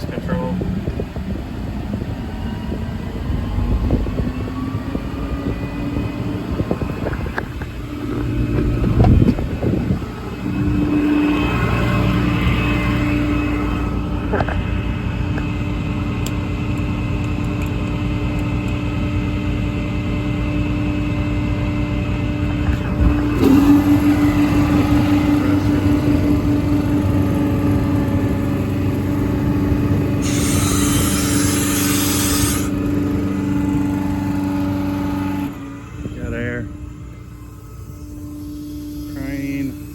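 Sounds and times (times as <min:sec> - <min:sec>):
diesel engine idling: 0:00.0 - 0:39.9
hiss: 0:30.2 - 0:32.7.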